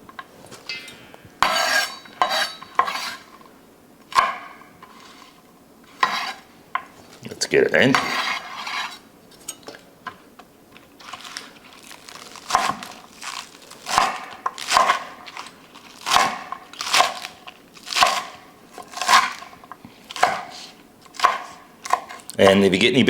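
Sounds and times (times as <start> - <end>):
crisp rustling swishes of vegetables: 11.0 - 17.5.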